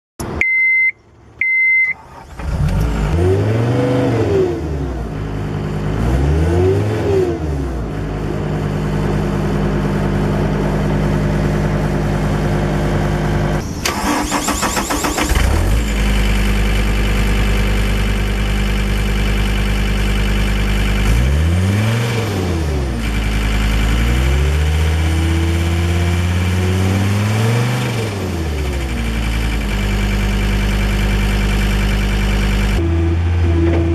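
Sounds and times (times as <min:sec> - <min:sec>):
short beeps: 0:00.4 - 0:02.0
diesel engine revving: 0:02.0 - 0:33.9
engine rapid clatter: 0:13.6 - 0:32.8.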